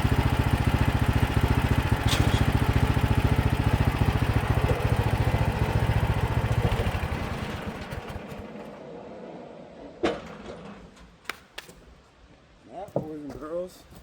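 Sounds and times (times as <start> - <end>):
small gasoline engine idling: 0.0 - 8.8.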